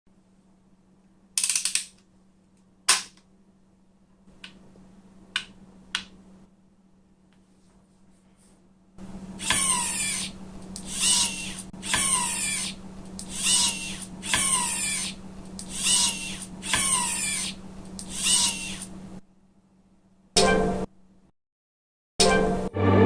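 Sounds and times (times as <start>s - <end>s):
steady low hum: 2.0s - 20.3s
robotic whirring of motorized arms: 9.4s - 19.0s.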